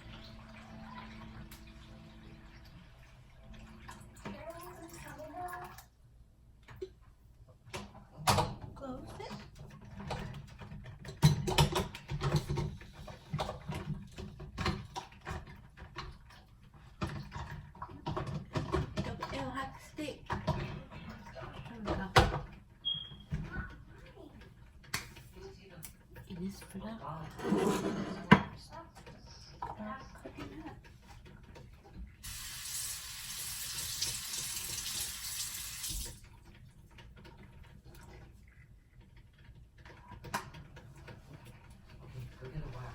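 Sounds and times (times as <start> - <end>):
water running in a stream: 32.2 - 36.3.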